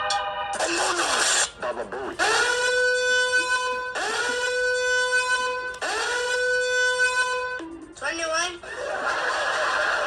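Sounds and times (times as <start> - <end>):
buzzy sliding tone from phone speaker: 2.2 - 7.6.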